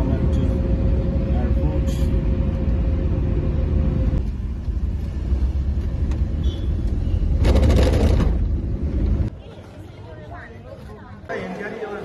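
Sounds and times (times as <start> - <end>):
engine and road rumble: 0.0 - 9.5
rattling rush of noise: 7.3 - 9.3.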